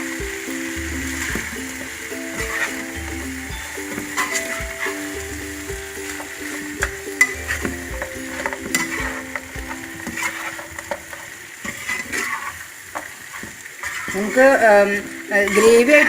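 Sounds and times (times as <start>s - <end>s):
soft background music: 0.0s - 12.0s, 14.2s - 16.0s
sauce sizzling in pan: 0.0s - 16.0s
spatula scraping pan: 7.1s - 14.4s, 15.3s - 16.0s.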